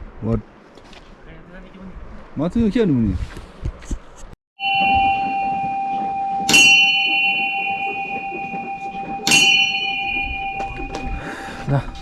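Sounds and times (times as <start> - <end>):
metal bell ringing: 4.6 - 12.0.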